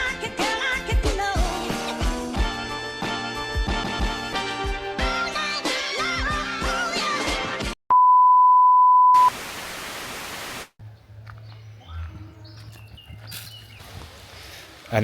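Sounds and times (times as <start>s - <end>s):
music: 0.0s - 7.8s
static hiss: 9.2s - 10.8s.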